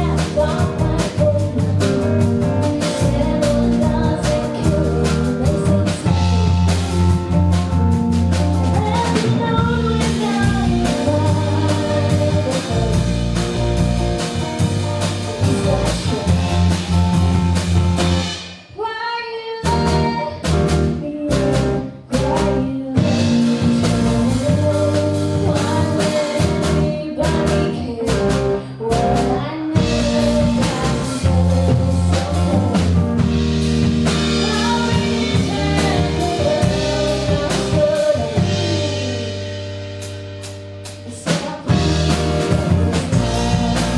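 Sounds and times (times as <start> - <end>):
person singing: 0.0 - 6.7, 8.6 - 13.7, 15.2 - 17.1, 18.8 - 33.3, 34.0 - 39.6, 41.0 - 43.9
drums: 0.0 - 43.9
guitar: 0.0 - 43.9
live band playing: 0.0 - 43.9.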